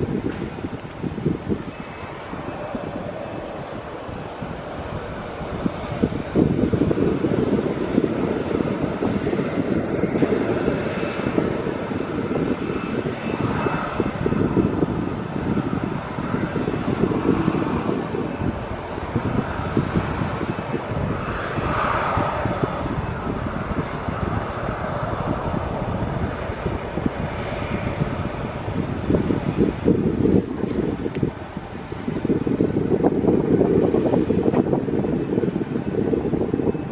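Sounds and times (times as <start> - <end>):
airplane engines running: 0.0 - 36.9.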